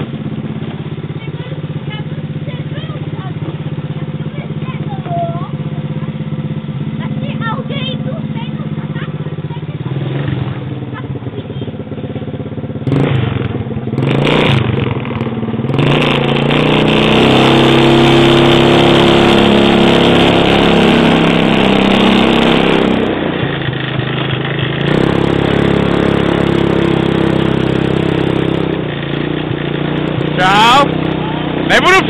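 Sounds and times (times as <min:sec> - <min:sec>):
atv engine revving: 0:00.0 - 0:32.0.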